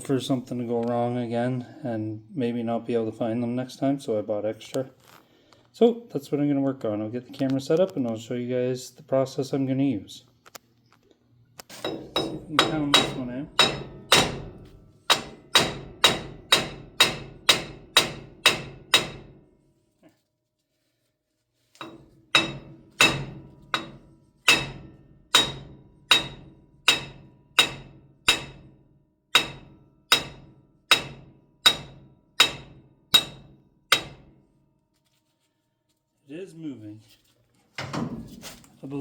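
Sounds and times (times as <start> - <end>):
hammer striking metal: 11.8 - 19.4, 21.8 - 34.4.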